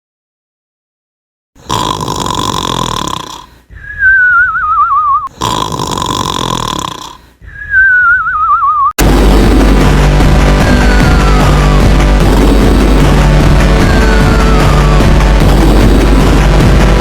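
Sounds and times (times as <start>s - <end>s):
cartoon snoring with whistle: 1.6s - 9.6s.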